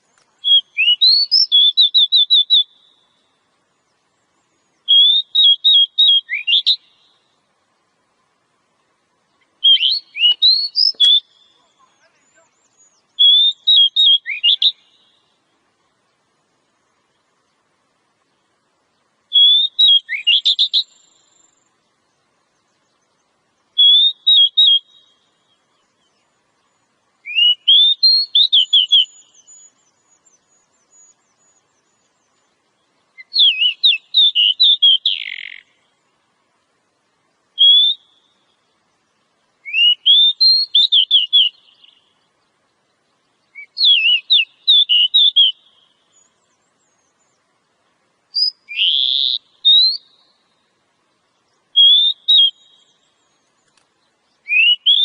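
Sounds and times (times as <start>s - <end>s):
bird singing whistled phrases: 0.4s - 3.1s, 4.8s - 7.1s, 9.6s - 15.3s, 19.3s - 21.5s, 23.8s - 25.6s, 27.2s - 32.1s, 33.2s - 35.7s, 37.6s - 38.5s, 39.6s - 42.1s, 43.5s - 47.4s, 48.3s - 50.5s, 51.7s - 53.5s, 54.4s - 55.0s.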